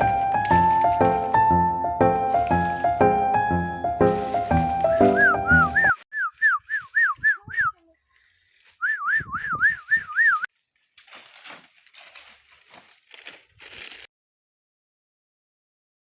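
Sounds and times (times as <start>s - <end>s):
whistled notes: 4.8s - 7.8s, 8.8s - 10.5s.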